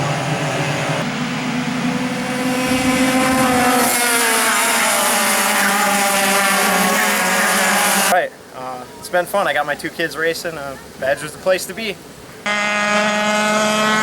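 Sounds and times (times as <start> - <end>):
racing kart engines: 0.0 - 8.2.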